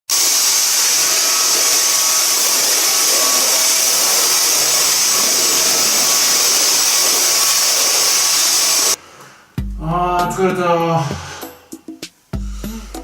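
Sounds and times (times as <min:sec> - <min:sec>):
vacuum cleaner running: 0:00.1 - 0:09.1.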